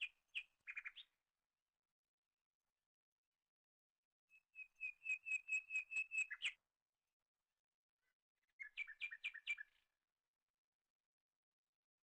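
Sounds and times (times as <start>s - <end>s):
bird whistling: 4.8s - 6.6s.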